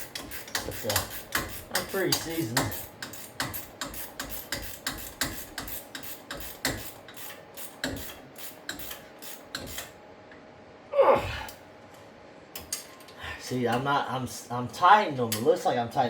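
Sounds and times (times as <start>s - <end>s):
ratchet wrench clicking: 0.0s - 9.9s.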